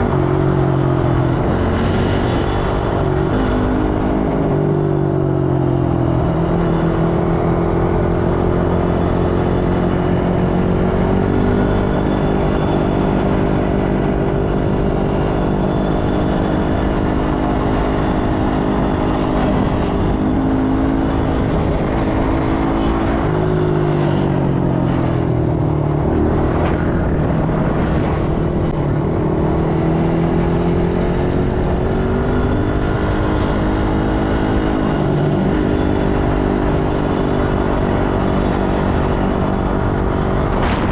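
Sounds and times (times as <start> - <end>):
atv engine running: 0.0 - 40.9.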